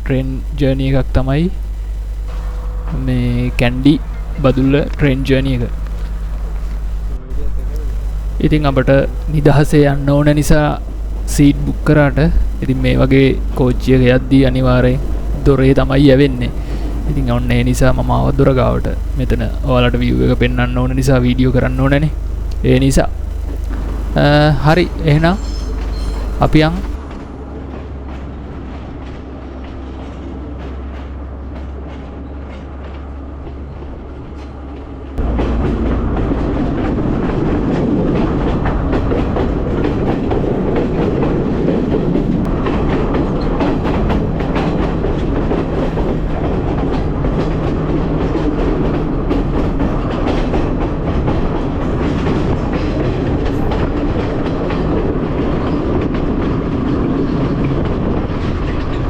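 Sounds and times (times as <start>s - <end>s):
train wheels rumbling on rails: 0.0s - 59.0s
clickety-clack over rail joints: 24.8s - 59.0s.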